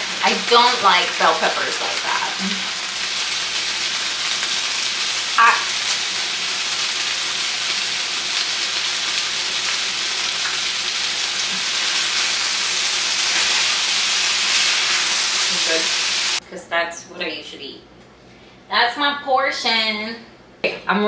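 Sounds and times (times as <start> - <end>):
stir fry sizzling in a pan: 0.0 - 16.4.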